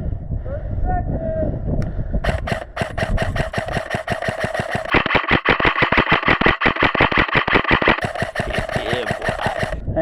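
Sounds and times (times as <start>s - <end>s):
airsoft gun firing full auto: 2.2s - 9.8s.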